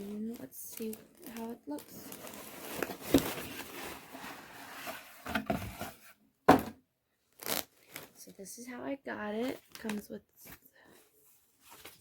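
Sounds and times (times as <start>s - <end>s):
cardboard flaps rustling: 2.0s - 6.0s.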